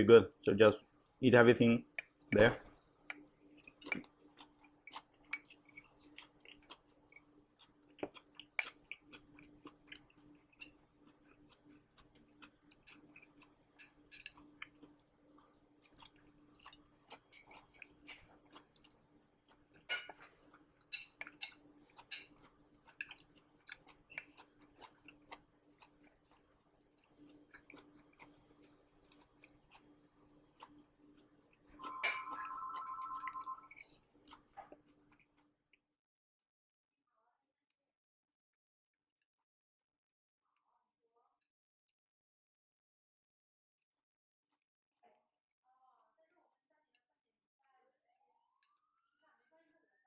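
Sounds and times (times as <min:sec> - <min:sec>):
person chewing crunchy food: 0:01.8 - 0:35.7.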